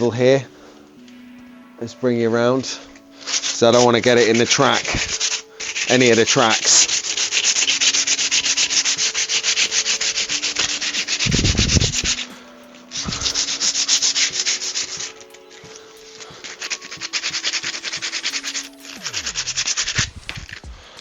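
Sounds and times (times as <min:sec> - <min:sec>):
sandpaper rubbing: 0:03.2 - 0:12.3, 0:12.9 - 0:15.3, 0:16.3 - 0:20.6.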